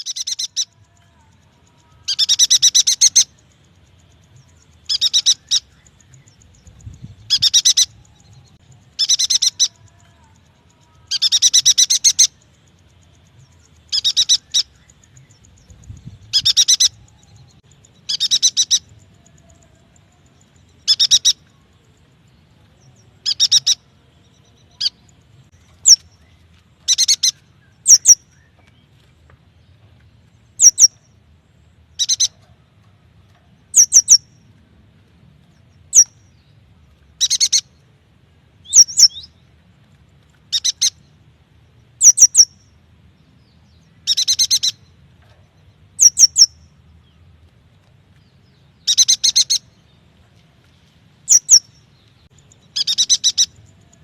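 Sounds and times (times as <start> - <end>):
bird chirping: 0.0 - 34.5, 35.4 - 37.9, 38.6 - 39.5, 40.3 - 47.3, 48.1 - 54.0.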